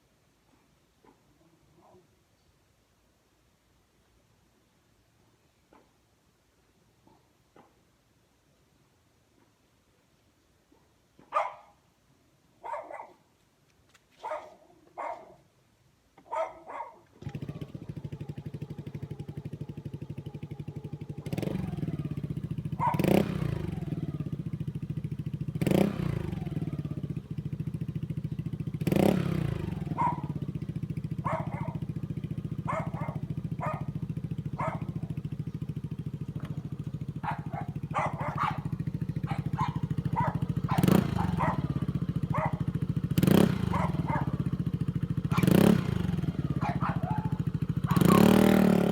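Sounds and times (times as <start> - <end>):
dog barking: 1.0 - 2.1, 10.7 - 11.8, 12.6 - 13.3, 14.2 - 15.5, 16.2 - 17.2, 22.7 - 23.2, 29.7 - 30.5, 31.2 - 31.9, 32.6 - 35.2, 37.2 - 44.6, 45.2 - 45.7, 46.4 - 48.6
engine throttle blips: 17.2 - 48.9
scooter engine running: 17.2 - 48.9.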